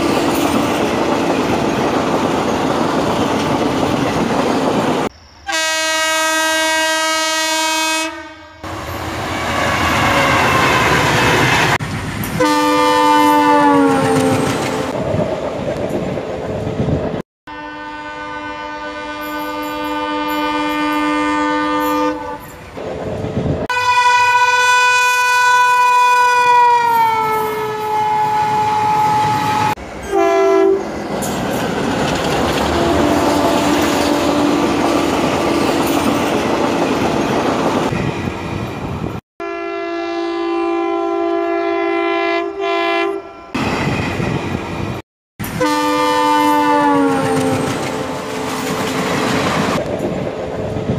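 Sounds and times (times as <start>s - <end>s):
train horn blasts: 5.5s - 8.7s, 12.4s - 15.0s, 17.5s - 22.6s, 23.7s - 30.9s, 32.7s - 34.8s, 39.4s - 43.6s, 45.5s - 49.1s
train wheels clattering over rail joints: 31.0s - 32.8s.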